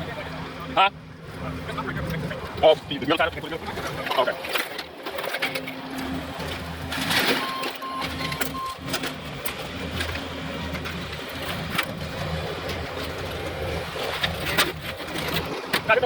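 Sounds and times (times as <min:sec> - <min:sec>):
loader engine hum: 0:00.0 - 0:16.0
quick beeps: 0:07.3 - 0:08.9.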